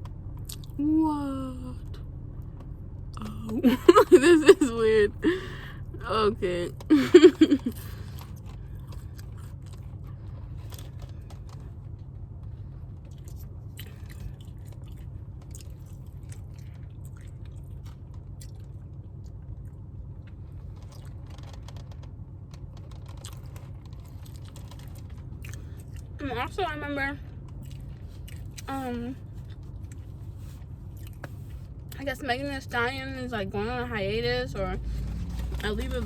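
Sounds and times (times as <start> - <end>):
low background hum: 0.0 - 36.0
person chewing food: 7.5 - 11.6, 13.0 - 21.8, 22.8 - 26.2, 27.5 - 31.6.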